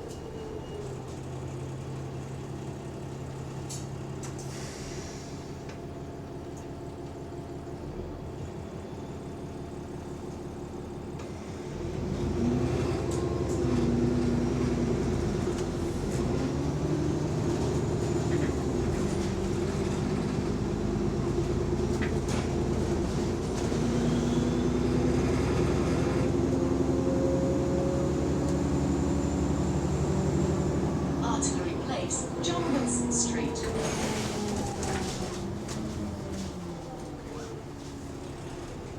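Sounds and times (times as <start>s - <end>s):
bus diesel engine: 0.0s - 38.9s.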